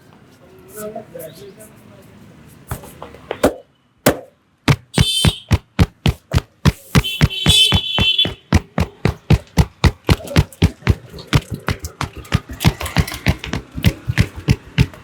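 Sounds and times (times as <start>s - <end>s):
hands slapping in massage: 4.1s - 15.0s.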